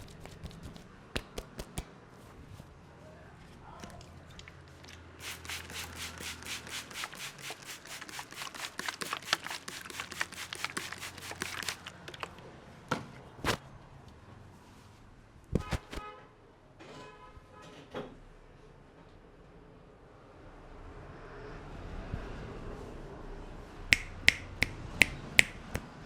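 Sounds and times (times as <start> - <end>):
hands tapping on head: 0.0 - 1.9, 23.9 - 25.9.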